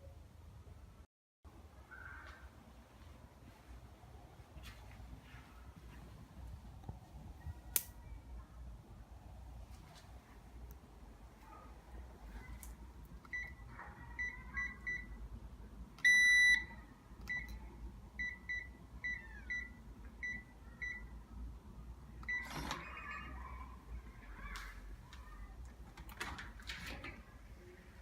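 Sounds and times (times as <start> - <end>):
keypad beeps: 13.3 - 13.6, 14.2 - 15.2, 16.0 - 16.7, 17.3 - 17.6, 18.2 - 21.1.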